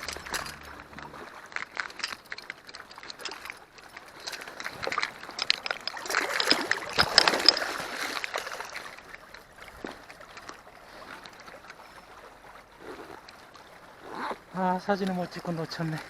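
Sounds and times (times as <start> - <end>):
fish splashing at water surface: 0.0 - 11.6
stream rushing: 0.0 - 16.0.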